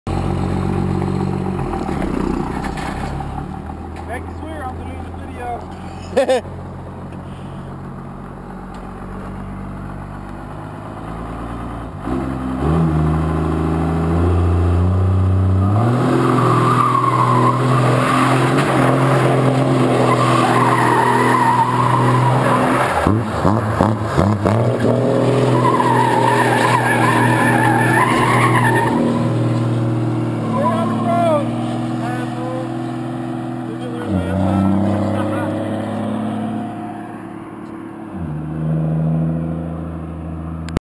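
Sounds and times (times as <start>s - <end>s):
vehicle engine revving: 0.1s - 40.8s
tyres squealing: 16.2s - 23.2s, 24.7s - 36.0s.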